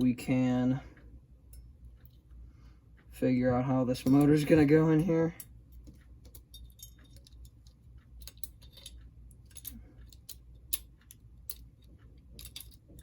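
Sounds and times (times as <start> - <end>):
clicks of small parts handled: 5.8 - 13.0.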